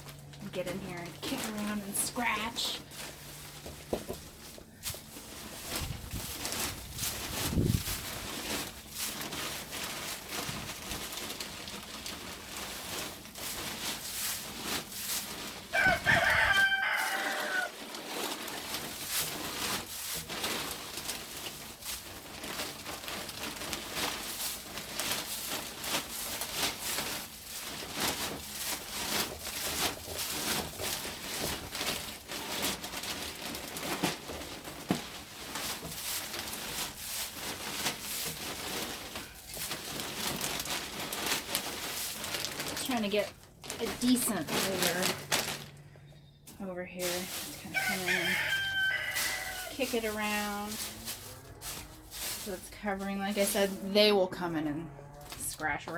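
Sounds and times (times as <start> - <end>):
rustle of wood shavings: 0.0 - 55.9
rooster crowing: 15.7 - 17.7, 47.8 - 49.7.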